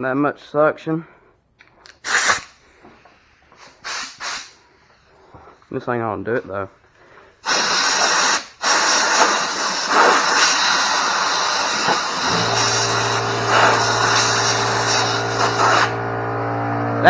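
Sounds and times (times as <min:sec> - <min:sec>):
compressed air hissing from blow gun: 0:02.0 - 0:05.2, 0:07.4 - 0:16.0
steady low hum: 0:11.5 - 0:17.0.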